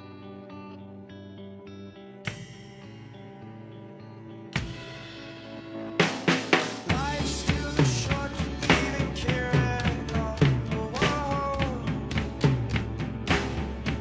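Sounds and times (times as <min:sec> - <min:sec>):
low bass: 0:00.0 - 0:14.0
rock band playing: 0:00.0 - 0:14.0.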